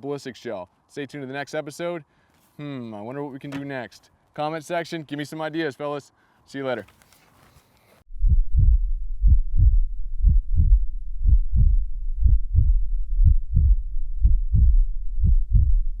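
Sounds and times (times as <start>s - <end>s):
heartbeat double thumps: 8.1s - 16.0s.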